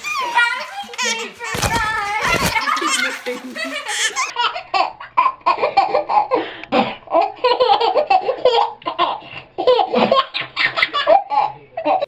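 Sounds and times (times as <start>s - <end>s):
baby laughing: 0.0s - 4.4s.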